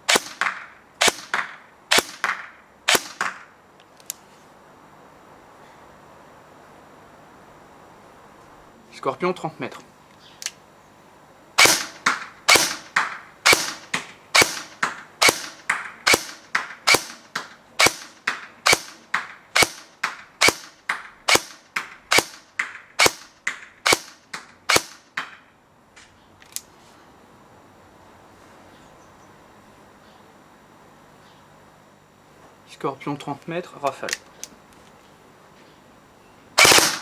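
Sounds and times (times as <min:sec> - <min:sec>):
airsoft gun firing single shots: 0:00.0 - 0:03.5, 0:11.6 - 0:25.4, 0:36.6 - 0:37.0.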